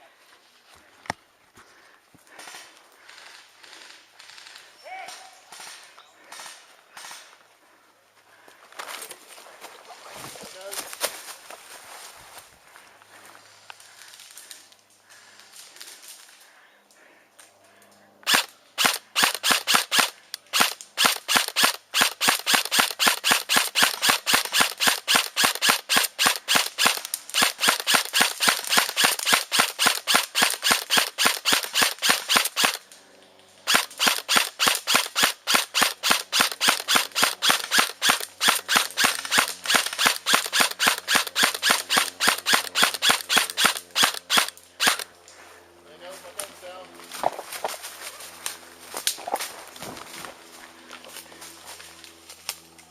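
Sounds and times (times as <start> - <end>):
airsoft gun firing: 18.2 - 32.8, 33.6 - 45.1.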